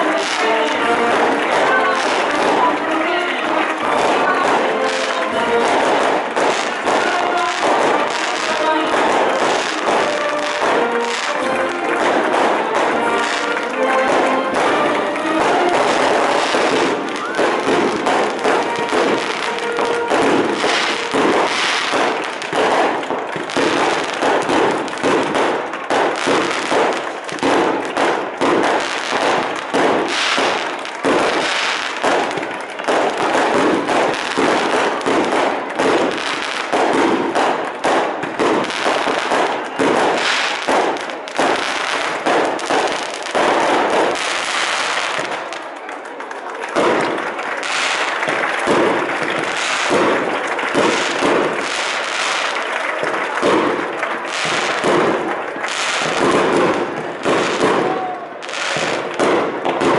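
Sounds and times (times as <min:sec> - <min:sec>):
firecrackers banging: 0:00.0 - 0:59.9.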